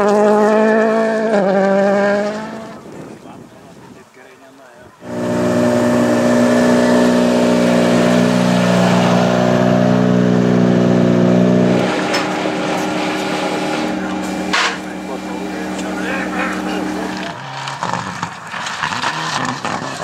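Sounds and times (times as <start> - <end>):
car engine running: 5.0 - 19.7.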